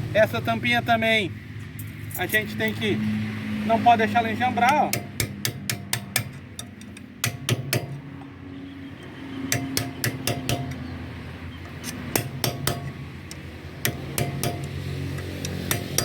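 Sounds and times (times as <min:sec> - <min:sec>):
hammer tapping metal cap: 0:09.6 - 0:10.8, 0:11.7 - 0:16.0.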